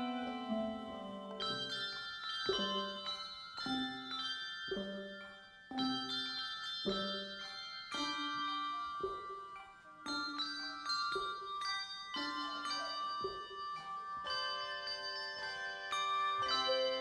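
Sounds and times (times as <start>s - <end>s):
bells playing slow melody: 0.0s - 17.0s.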